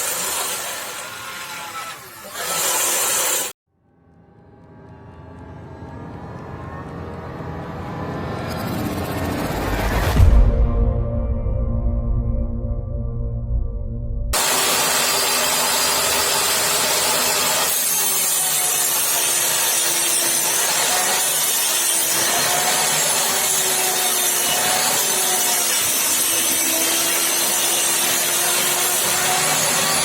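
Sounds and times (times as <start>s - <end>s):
power tool motor on wood: 0.0s - 3.6s, 14.4s - 30.0s.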